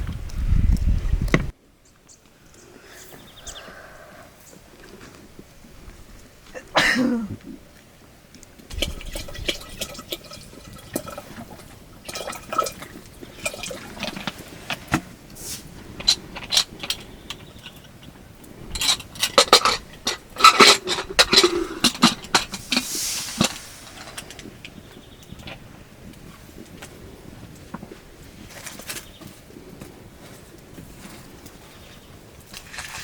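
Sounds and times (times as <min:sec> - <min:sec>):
water pouring and sloshing: 0:08.7 - 0:16.8, 0:32.5 - 0:33.0.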